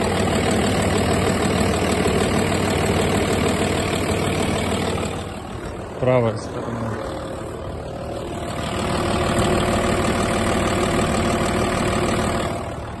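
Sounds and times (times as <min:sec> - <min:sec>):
diesel engine idling: 0:00.0 - 0:13.0.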